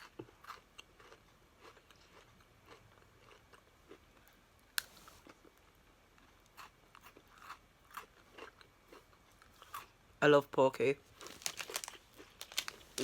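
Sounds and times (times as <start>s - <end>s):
person crunching a biscuit stick: 0.0s - 10.0s, 11.2s - 13.0s.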